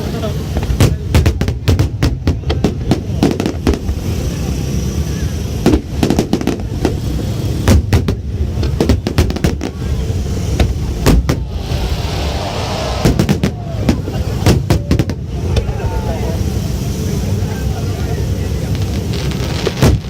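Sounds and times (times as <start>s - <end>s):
fireworks bangs: 0.0s - 20.0s
steady low rumble: 5.6s - 19.4s.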